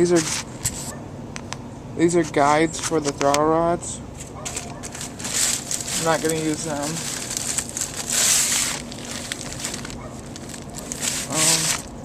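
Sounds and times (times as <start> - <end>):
rustling handling noise: 0.0 - 1.0, 4.1 - 12.0.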